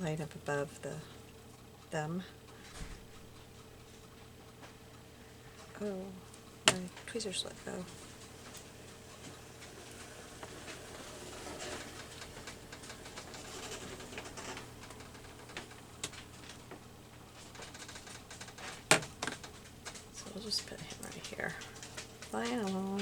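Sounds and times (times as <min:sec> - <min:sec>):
tweezers clicking and tapping: 0:06.7 - 0:07.0.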